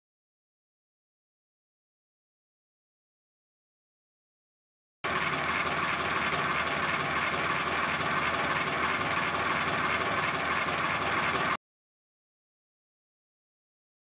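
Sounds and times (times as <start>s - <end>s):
milling machine running: 5.0s - 11.6s.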